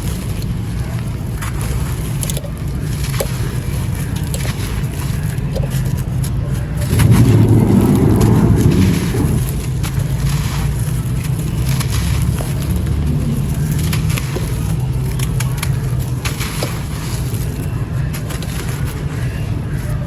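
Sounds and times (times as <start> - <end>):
dry dirt crumbling and crackling: 0.0 - 20.0
steady low rumble: 6.5 - 11.7.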